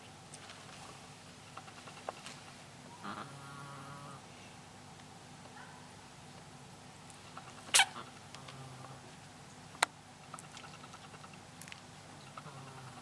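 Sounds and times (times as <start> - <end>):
kitten sneezing: 7.7 - 8.0.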